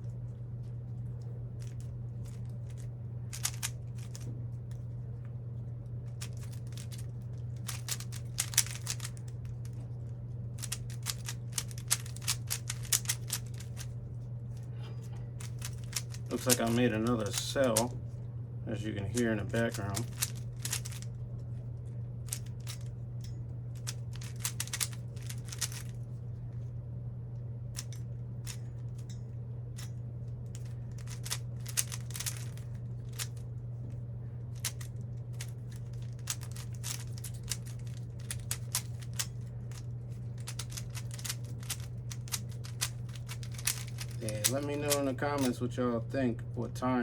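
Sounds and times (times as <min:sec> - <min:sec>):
low hum: 0:00.0 - 0:47.0
puzzle cube layers clicking: 0:07.7 - 0:09.1, 0:10.6 - 0:13.6.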